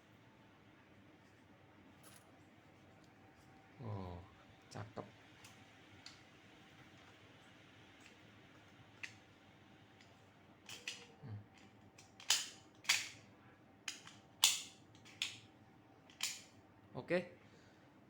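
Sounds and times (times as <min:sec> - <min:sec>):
metal buckle clicking and snapping: 0:10.7 - 0:13.2, 0:13.9 - 0:15.4, 0:16.1 - 0:16.5.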